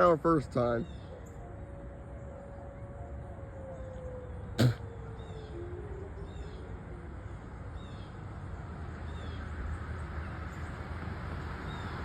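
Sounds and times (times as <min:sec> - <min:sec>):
distant traffic rumble: 0:00.0 - 0:12.0
bird chirping: 0:00.5 - 0:08.2.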